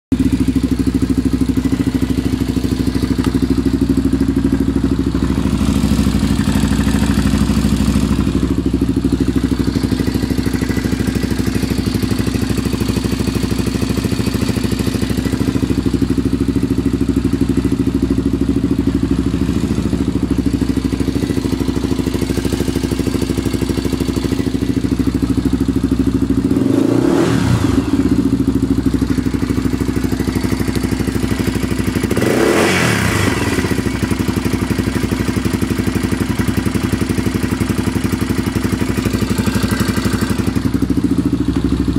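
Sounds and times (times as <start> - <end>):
engine idling with ticking: 0.1 - 41.9
engine revving: 26.5 - 28.3, 32.0 - 34.0.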